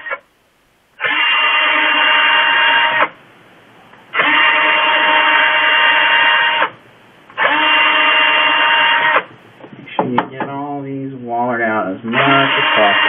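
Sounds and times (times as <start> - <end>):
electric drill whining: 1.0 - 3.1, 4.2 - 6.7, 7.4 - 9.3, 12.3 - 13.0.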